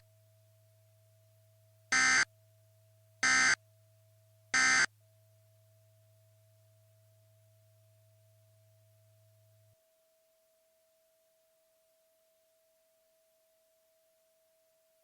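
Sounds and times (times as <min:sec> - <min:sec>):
faint steady hum: 0:00.0 - 0:15.0
harsh digital data tone bursts: 0:02.0 - 0:02.2, 0:03.2 - 0:03.6, 0:04.6 - 0:04.9.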